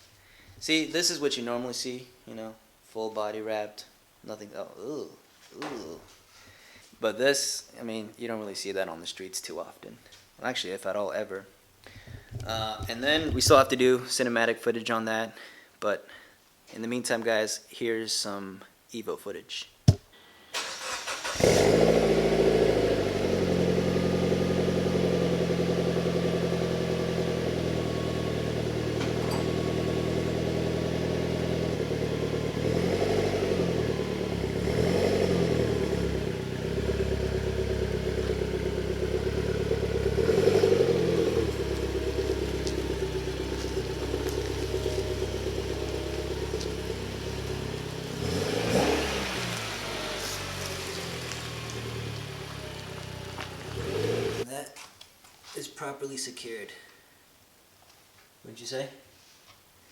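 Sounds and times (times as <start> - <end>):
car engine running and revving: 21.4 - 54.4.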